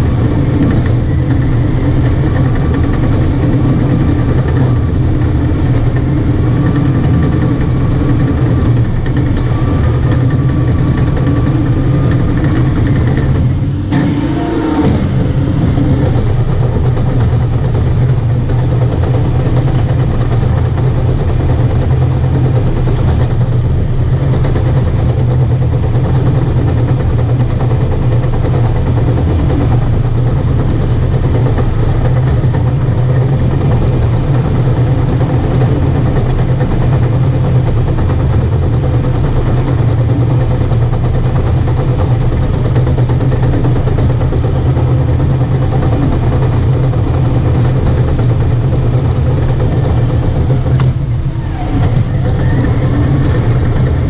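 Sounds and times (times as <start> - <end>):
bulldozer diesel engine running: 0.0 - 54.0.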